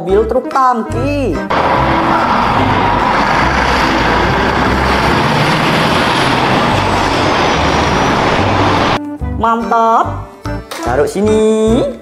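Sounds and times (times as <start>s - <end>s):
truck engine: 1.5s - 9.0s.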